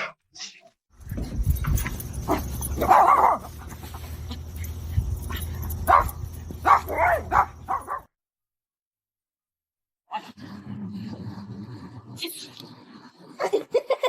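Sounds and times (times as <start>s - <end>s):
low steady hum: 1.0s - 8.0s.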